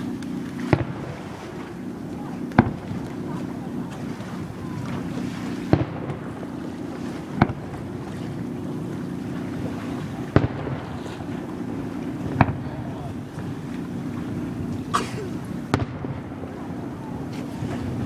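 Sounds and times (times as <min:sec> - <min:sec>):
steady low hum: 0:00.0 - 0:18.0
fireworks bangs: 0:00.6 - 0:01.2, 0:02.4 - 0:03.6, 0:05.0 - 0:06.4, 0:07.2 - 0:08.4, 0:10.3 - 0:11.0, 0:11.7 - 0:13.6, 0:15.7 - 0:16.7.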